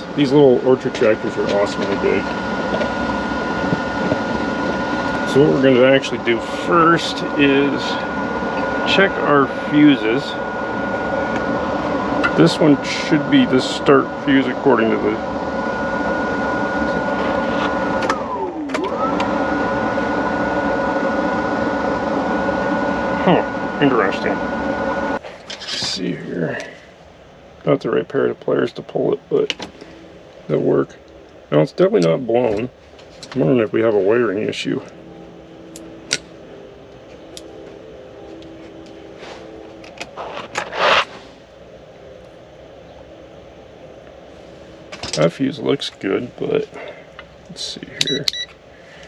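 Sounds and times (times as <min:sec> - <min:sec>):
motor humming with high whine: 0:00.0 - 0:49.0.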